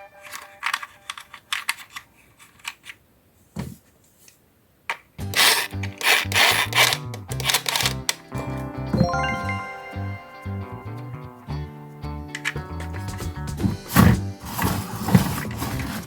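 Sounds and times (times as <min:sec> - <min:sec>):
plastic parts clicking and rubbing: 0:00.2 - 0:03.1, 0:03.8 - 0:08.3, 0:13.9 - 0:16.0
background music with steady beat: 0:08.3 - 0:15.2.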